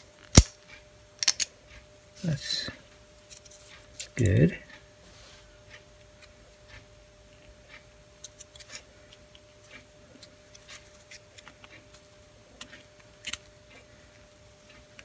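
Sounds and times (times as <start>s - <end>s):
metal clicks and scrapes: 1.2s - 1.5s.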